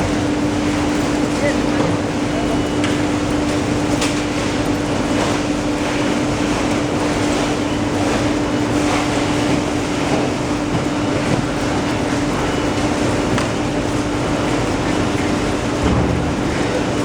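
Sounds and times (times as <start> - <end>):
machine running with low hum: 0.0 - 17.0.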